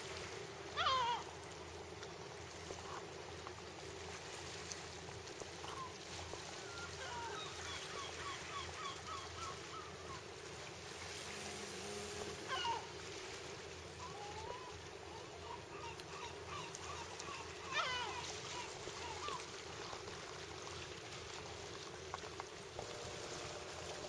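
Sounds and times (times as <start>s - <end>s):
animal calling: 11.3s - 13.0s.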